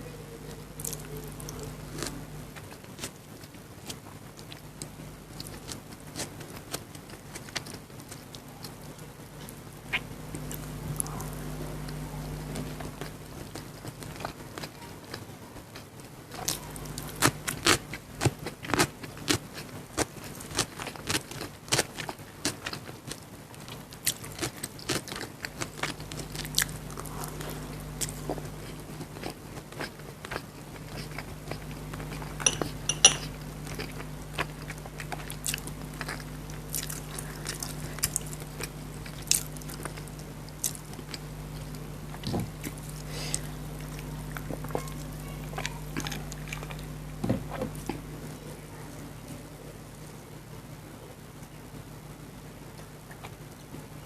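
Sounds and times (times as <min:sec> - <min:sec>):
steady low hum: 0:00.0 - 0:54.0
wet chewing and smacking: 0:00.8 - 0:48.1
ringing clink: 0:32.4 - 0:33.3.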